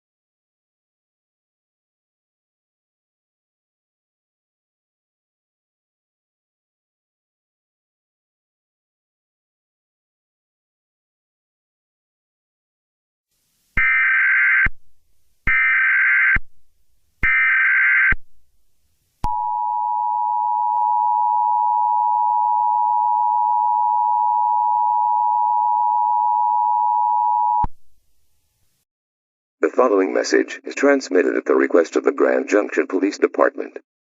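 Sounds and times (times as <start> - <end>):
data tone bursts: 19.3 - 27.7
two-tone attention signal: 19.3 - 27.7.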